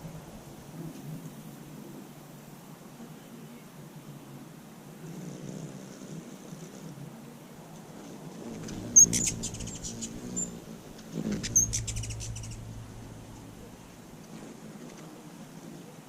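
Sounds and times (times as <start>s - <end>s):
hummingbird wings buzzing: 7.9s - 16.0s
hummingbirds chittering: 8.4s - 15.5s.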